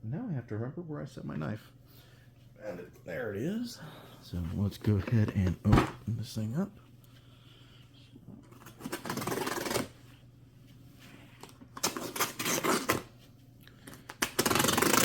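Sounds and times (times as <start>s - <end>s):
knife slicing packaging: 8.6s - 9.9s, 11.8s - 13.1s, 14.2s - 15.0s.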